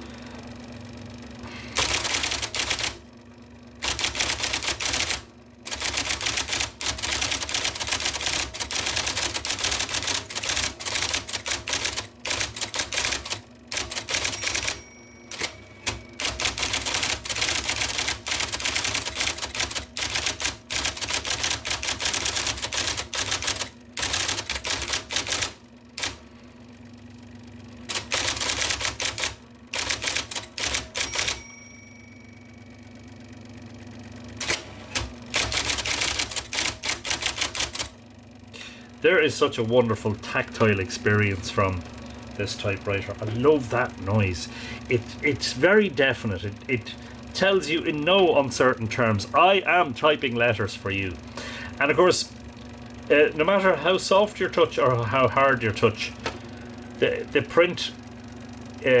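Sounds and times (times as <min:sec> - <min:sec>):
electric typewriter typing: 0:01.8 - 0:03.1, 0:03.8 - 0:26.2, 0:27.8 - 0:31.7, 0:34.4 - 0:38.0, 0:52.6 - 0:57.8.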